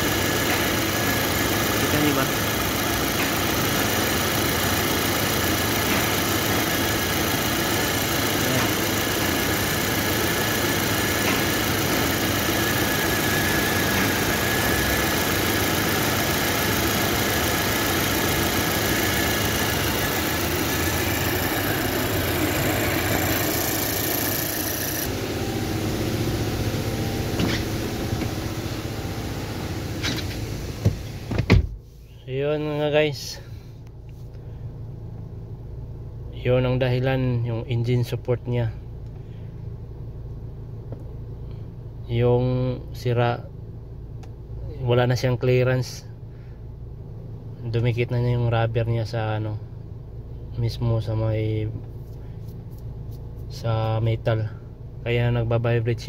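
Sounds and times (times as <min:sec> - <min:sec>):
car engine idling: 0:00.0 - 0:31.3.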